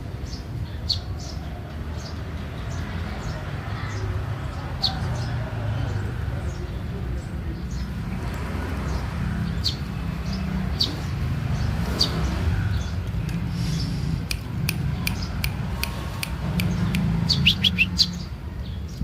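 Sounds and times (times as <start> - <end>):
small birds chirping: 0.0 - 19.0
sharp clicks: 14.2 - 17.9.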